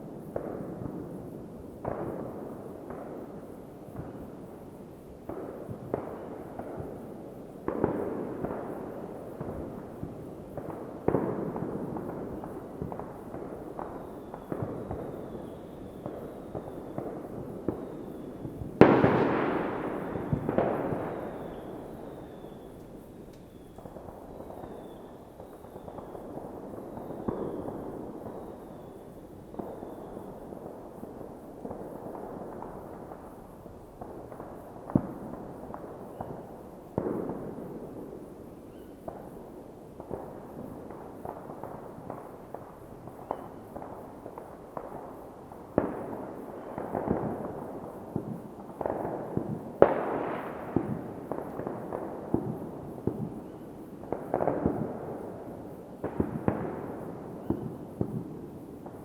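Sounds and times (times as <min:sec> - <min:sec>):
fireworks bangs and cracks: 0:00.0 - 0:59.0.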